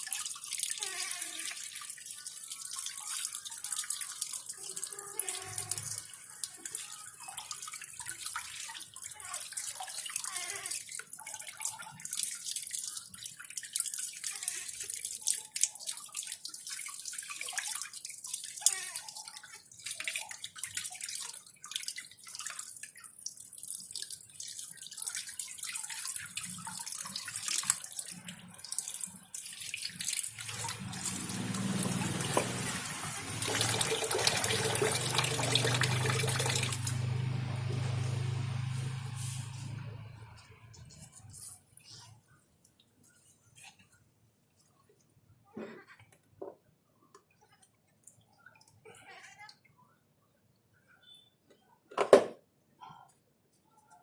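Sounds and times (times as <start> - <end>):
bath water running: 0.0 - 41.8
small water splashes and drips: 0.0 - 45.3, 46.0 - 51.7.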